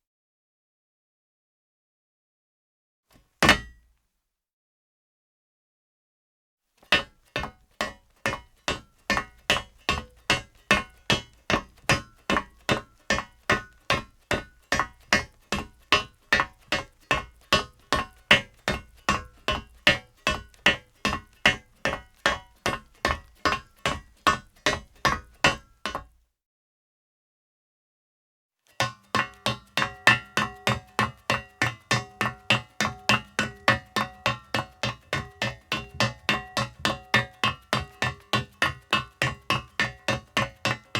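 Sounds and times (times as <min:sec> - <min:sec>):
footsteps on metal: 0:06.8 - 0:26.2, 0:28.8 - 0:40.9.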